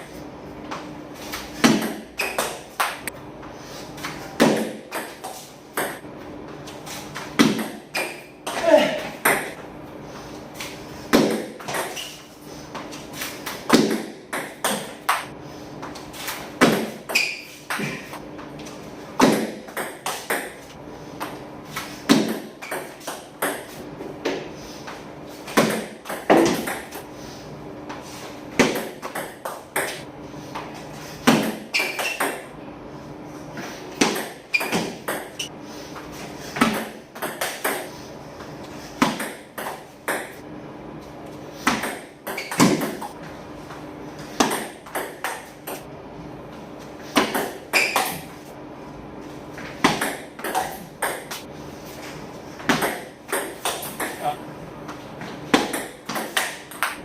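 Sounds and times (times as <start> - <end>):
table tennis ball hits: 1.4 - 3.1, 4.1 - 6.1, 7.2 - 9.6, 11.1 - 12.2, 13.4 - 15.3, 16.6 - 18.2, 19.2 - 20.7, 22.1 - 24.5, 25.5 - 27.1, 28.6 - 30.1, 31.2 - 32.5, 34.0 - 35.5, 36.6 - 38.0, 39.0 - 40.4, 41.6 - 43.2, 44.3 - 45.9, 47.2 - 48.3, 49.7 - 51.5, 52.6 - 54.4, 55.5 - 57.0.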